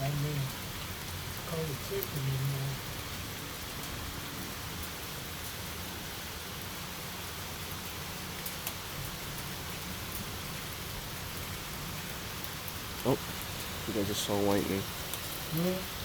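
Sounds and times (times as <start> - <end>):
steady rain: 0.0 - 16.0.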